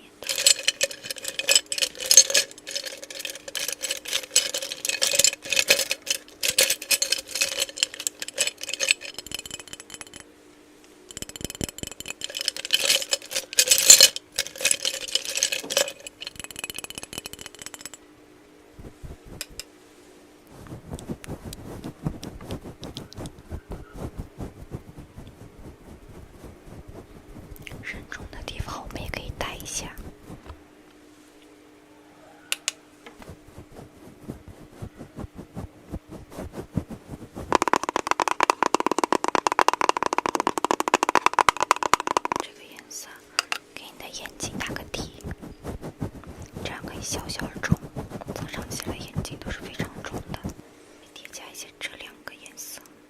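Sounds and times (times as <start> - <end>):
cosmetic packaging rattling and clinking: 0.2 - 10.2, 11.1 - 18.0, 37.5 - 42.5, 46.6 - 50.5
soft dull tapping and rubbing: 18.8 - 19.6, 20.5 - 30.6.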